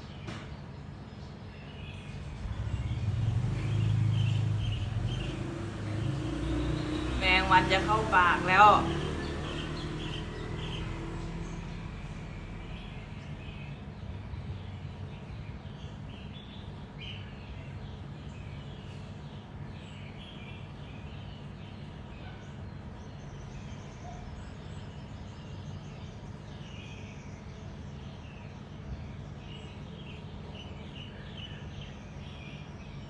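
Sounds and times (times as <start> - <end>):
small birds chirping: 0.0 - 33.0
low background rumble: 1.8 - 22.4.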